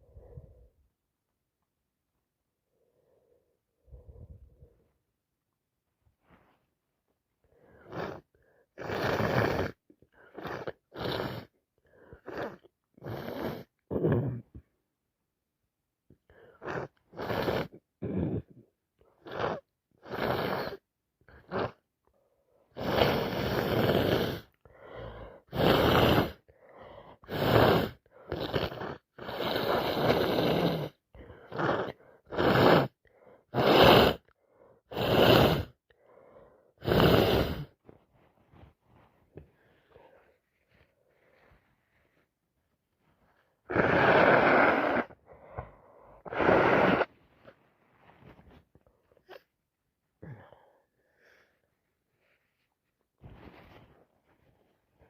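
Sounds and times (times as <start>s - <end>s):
woman nasal breathing noises: 22.7s - 42.3s, 43.0s - 49.6s.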